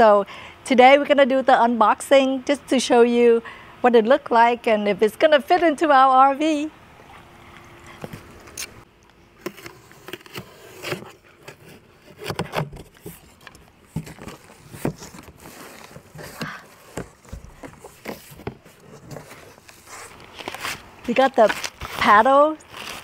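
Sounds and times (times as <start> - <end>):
cardboard box being unpacked: 9.4 - 23.0.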